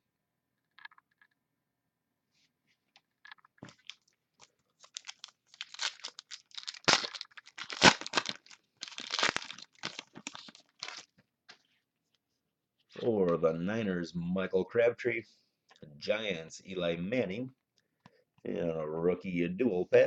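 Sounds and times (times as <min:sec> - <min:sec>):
card pack wrapper tearing and crinkling: 0:03.6 - 0:11.1.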